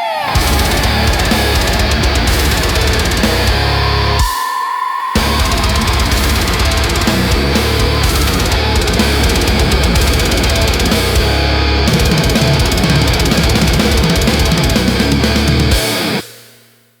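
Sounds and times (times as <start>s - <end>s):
heavy metal music: 0.0s - 16.6s.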